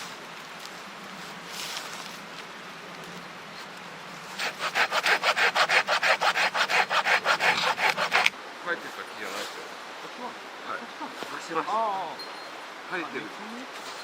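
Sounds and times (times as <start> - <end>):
hand saw cutting wood: 4.4 - 8.3.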